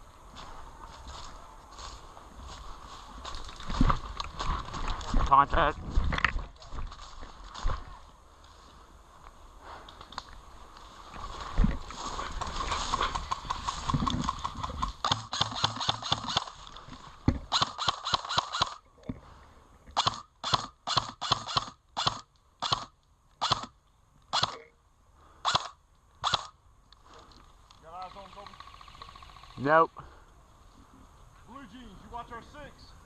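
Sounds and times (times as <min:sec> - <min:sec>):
rustling movement: 0:00.4 - 0:17.5
airsoft rifle shots: 0:12.9 - 0:16.5, 0:17.5 - 0:18.8, 0:20.0 - 0:24.6, 0:25.4 - 0:26.5.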